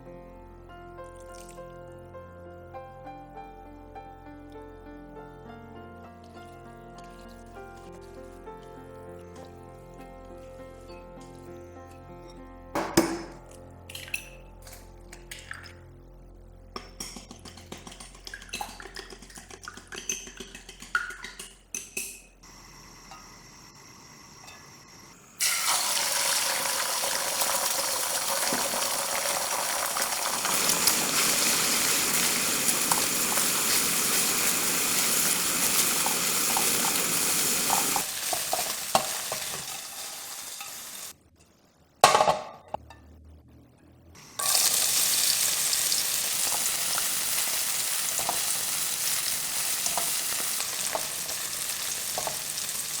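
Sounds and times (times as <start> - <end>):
spatula scraping and tapping: 16.8 - 22.3
food sizzling in a pan: 22.5 - 41.2, 44.2 - 53.0.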